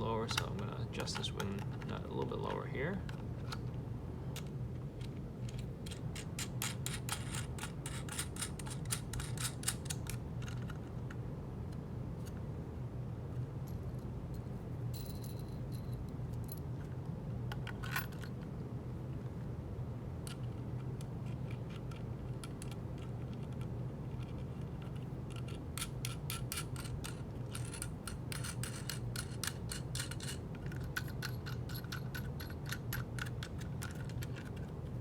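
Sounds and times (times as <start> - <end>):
small metallic clicks and rattles: 4.4 - 11.2, 17.5 - 18.5, 20.2 - 35.0.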